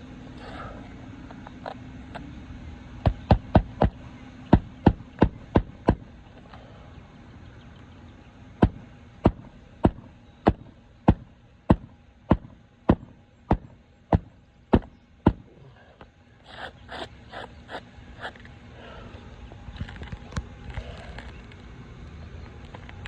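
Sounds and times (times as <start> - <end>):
hammer striking nail into shingle: 4.5 - 6.0, 8.6 - 15.4.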